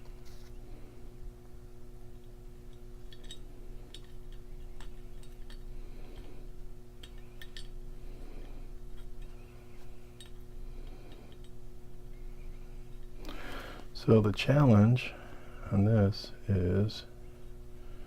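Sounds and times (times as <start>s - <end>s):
steady low hum: 0.0s - 18.0s
metallic clicks of small parts: 2.2s - 6.3s, 7.0s - 7.8s, 10.1s - 11.6s.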